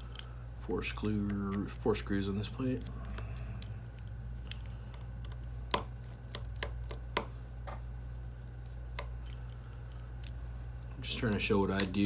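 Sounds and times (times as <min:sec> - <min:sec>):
steady low hum: 0:00.0 - 0:12.0
screwdriver clicks and taps: 0:04.5 - 0:07.8.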